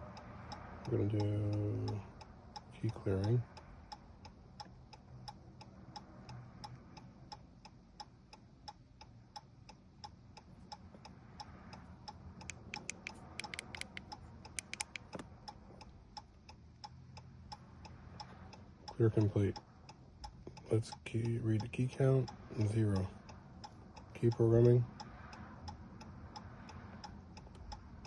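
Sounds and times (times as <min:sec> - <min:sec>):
steady ticking clicks: 0:00.0 - 0:28.0
sharp clicks: 0:12.1 - 0:16.9.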